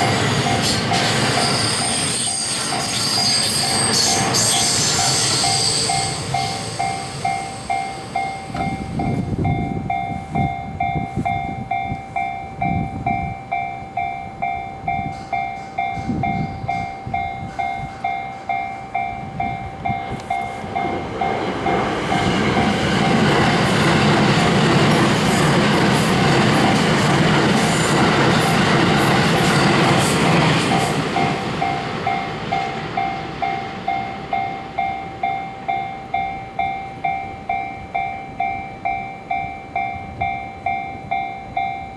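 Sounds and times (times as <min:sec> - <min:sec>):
electric trains rumbling: 0:00.0 - 0:41.9
railroad crossing bell: 0:00.0 - 0:41.9.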